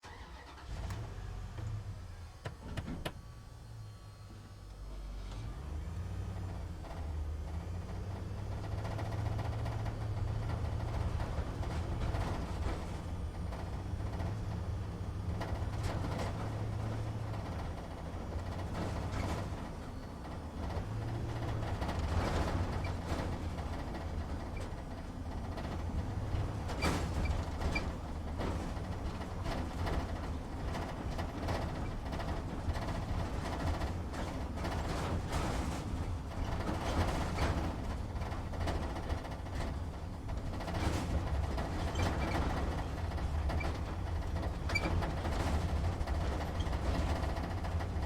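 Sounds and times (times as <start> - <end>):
truck engine droning: 0.0 - 48.0
rattles and knocks in cab: 8.4 - 48.0.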